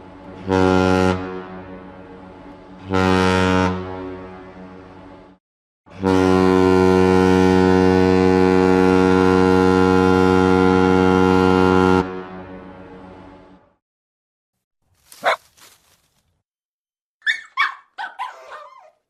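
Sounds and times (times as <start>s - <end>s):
ship's horn blasts: 0.0s - 13.8s.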